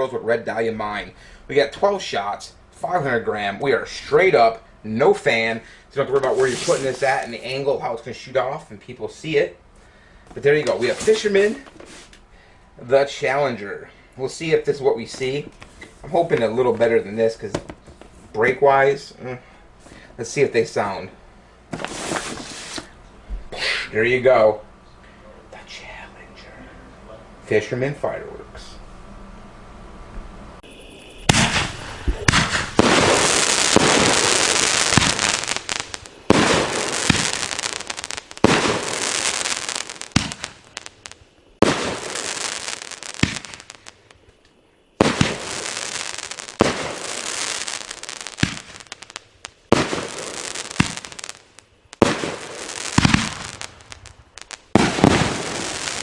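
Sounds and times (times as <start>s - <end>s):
firework crackling hiss: 5.2s - 7.6s, 10.4s - 12.2s, 21.7s - 23.0s, 30.6s - 56.0s
firework shots: 6.1s - 7.4s, 21.7s - 22.9s, 30.6s - 44.3s, 45.0s - 56.0s.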